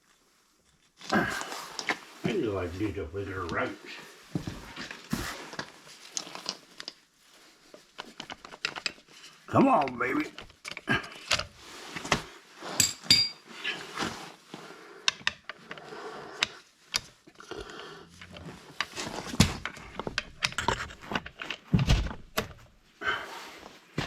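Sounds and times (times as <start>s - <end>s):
metal wrench clinks and knocks: 12.8s - 13.4s.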